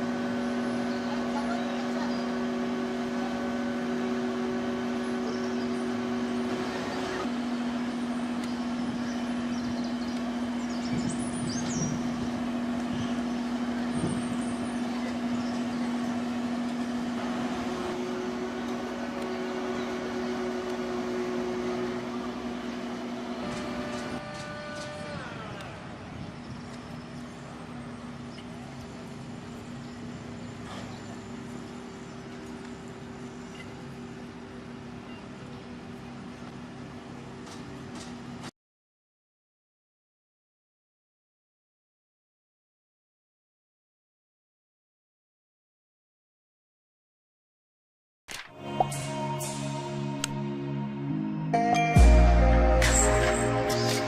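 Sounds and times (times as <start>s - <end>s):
continuous background noise: 0.0s - 38.5s, 48.3s - 54.0s
steady mechanical hum: 0.0s - 38.5s.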